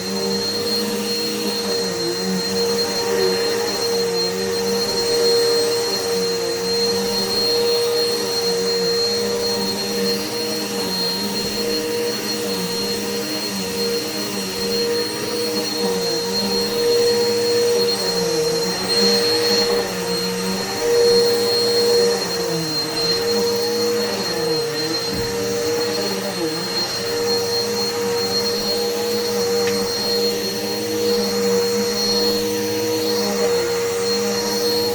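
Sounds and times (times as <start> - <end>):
vacuum cleaner running: 0.0 - 34.9.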